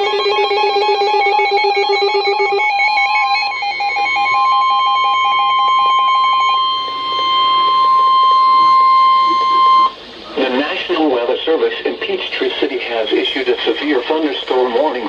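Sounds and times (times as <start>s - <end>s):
rapid pulsing alarm beep: 0.0s - 10.0s
steady warning alarm tone: 0.0s - 11.5s.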